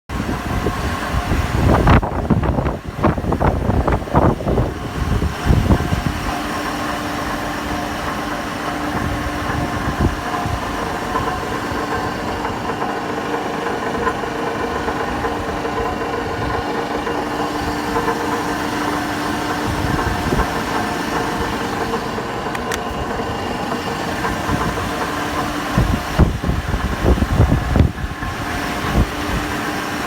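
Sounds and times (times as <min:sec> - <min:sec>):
gear reducer humming with whine: 0:00.1 - 0:30.0.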